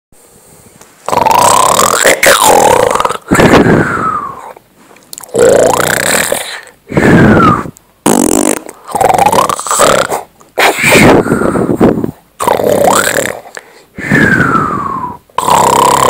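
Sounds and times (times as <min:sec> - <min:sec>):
farting noises: 0:01.1 - 0:03.7, 0:05.2 - 0:13.6, 0:15.4 - 0:16.0
snoring noises: 0:01.1 - 0:04.4, 0:05.3 - 0:10.3, 0:11.0 - 0:16.0.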